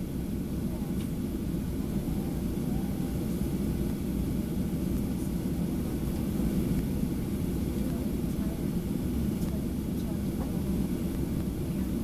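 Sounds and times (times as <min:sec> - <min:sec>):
airplane cabin engine rumble: 0:00.0 - 0:12.0.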